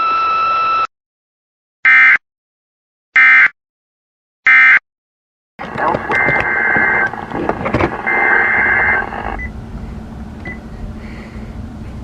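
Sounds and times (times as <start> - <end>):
radio static: 5.6 - 9.4
steady hum: 5.6 - 12.0.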